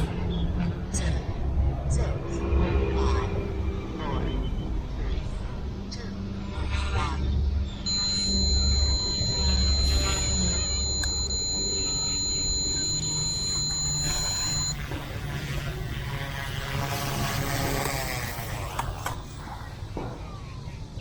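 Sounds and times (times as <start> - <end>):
remote-control helicopter flying: 0.0 - 21.0
high-pitched motor whine: 7.6 - 20.1.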